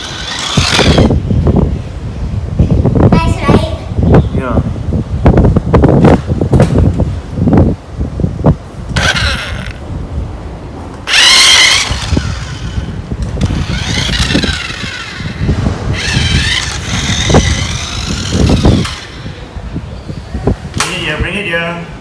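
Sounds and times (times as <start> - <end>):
remote-control car motor whine: 0.0 - 1.2, 9.0 - 9.8, 11.1 - 19.4.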